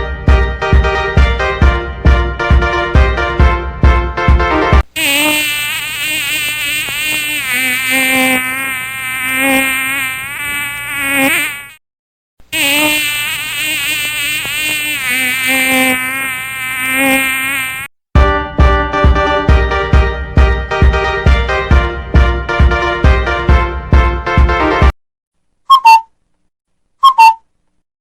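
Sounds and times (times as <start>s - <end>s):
insect-like buzz: 4.8s - 11.8s, 12.5s - 17.9s.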